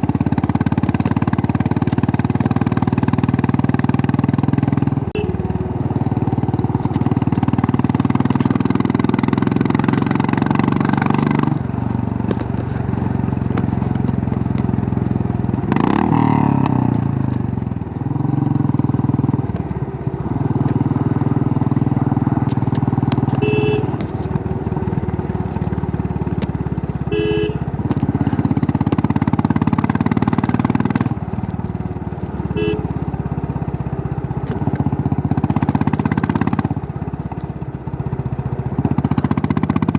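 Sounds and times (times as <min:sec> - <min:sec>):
motorcycle engine running: 0:00.0 - 0:39.9
short horn honks: 0:05.1 - 0:05.6, 0:23.3 - 0:24.1, 0:27.0 - 0:27.8, 0:32.4 - 0:33.0.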